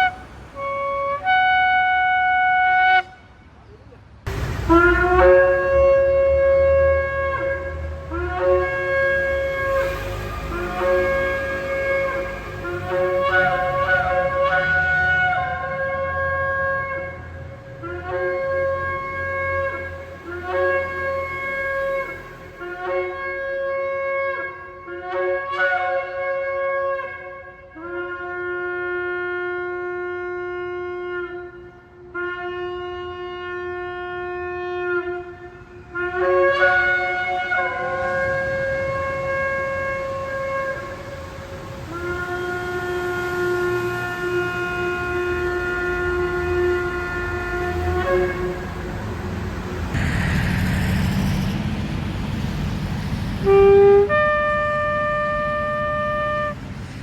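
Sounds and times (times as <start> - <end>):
ram's horn blasts: 4.3 - 56.7.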